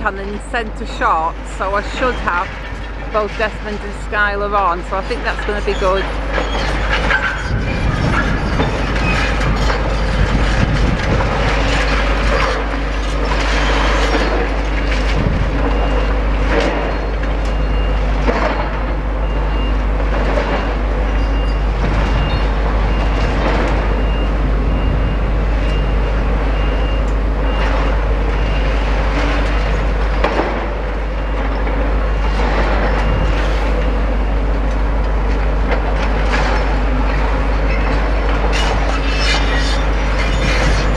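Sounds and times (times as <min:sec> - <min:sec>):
excavator engine rumble: 0:00.0 - 0:40.9.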